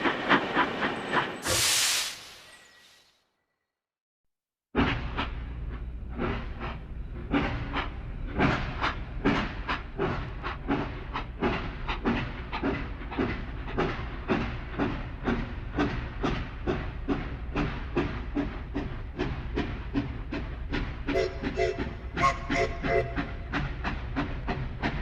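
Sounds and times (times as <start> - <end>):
steam locomotive chuffing: 4.8 - 25.0.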